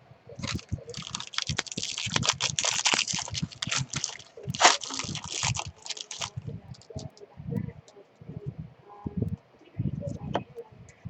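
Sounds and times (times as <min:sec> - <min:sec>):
card pack wrapper crinkling and tearing: 0:00.4 - 0:07.1
cards handled: 0:00.4 - 0:07.1.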